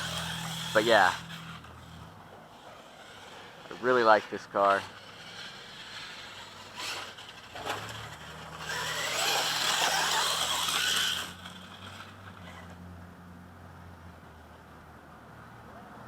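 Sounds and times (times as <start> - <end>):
electric motor whining: 0.0 - 12.7
tyres on dirt: 0.0 - 12.8.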